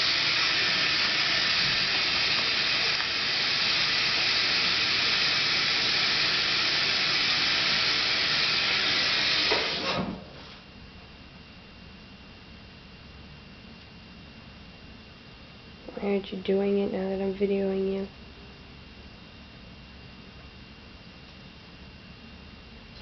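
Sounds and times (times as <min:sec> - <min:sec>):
loud hissing noise: 0:00.0 - 0:10.6.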